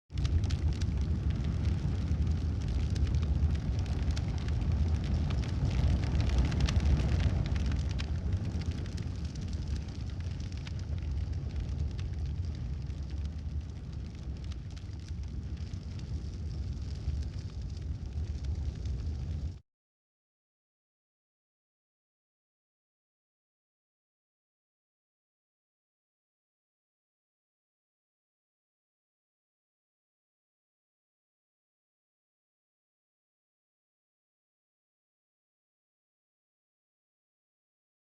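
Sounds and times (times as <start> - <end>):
fire crackling and popping: 0.1 - 19.6
large fire rumbling: 0.1 - 19.6.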